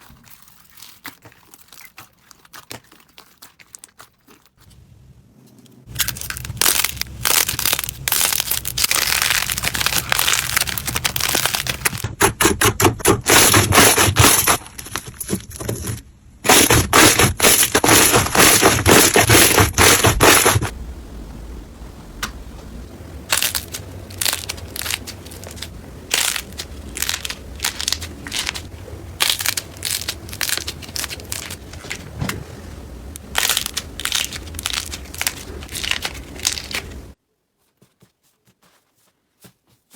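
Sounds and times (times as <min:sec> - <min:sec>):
slime crackling and popping: 0:05.9 - 0:15.0, 0:16.5 - 0:20.7, 0:23.3 - 0:32.0, 0:33.1 - 0:37.2.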